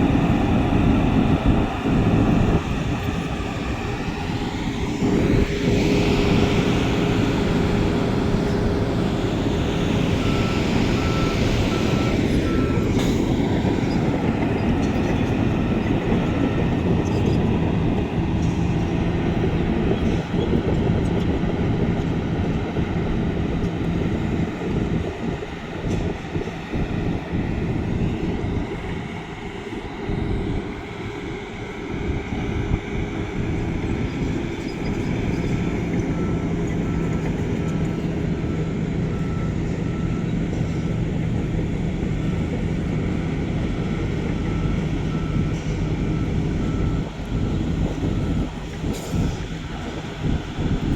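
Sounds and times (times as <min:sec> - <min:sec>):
reversing alarm beeping: 0:00.0 - 0:18.4, 0:31.7 - 0:50.9
diesel engine running: 0:00.0 - 0:50.9.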